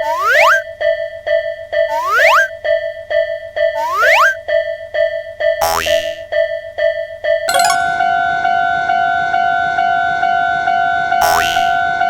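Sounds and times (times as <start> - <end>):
brief chime: 7.5 - 8.4
higher-pitched crossing bell: 7.5 - 8.4
level crossing bell ringing: 7.5 - 8.4.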